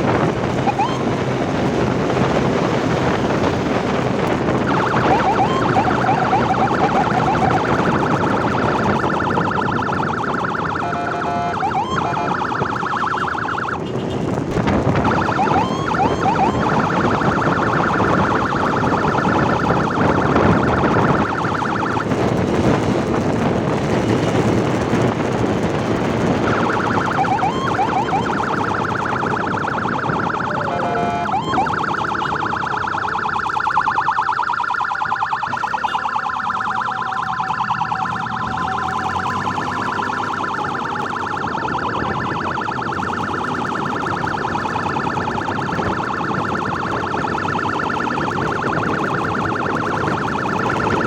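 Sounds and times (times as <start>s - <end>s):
ambulance siren warbling: 0.0s - 51.0s
road noise: 0.0s - 51.0s
rushing wind: 0.0s - 51.0s.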